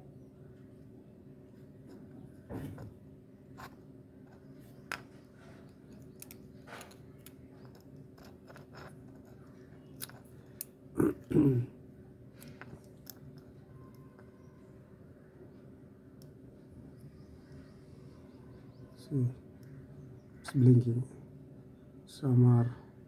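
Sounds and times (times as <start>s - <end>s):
probe tips clicking and scraping: 3.6s - 10.7s, 12.4s - 14.4s.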